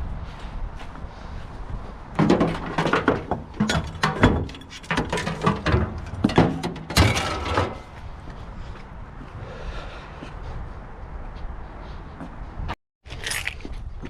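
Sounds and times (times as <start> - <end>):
junk knocking and clattering: 2.1 - 8.0.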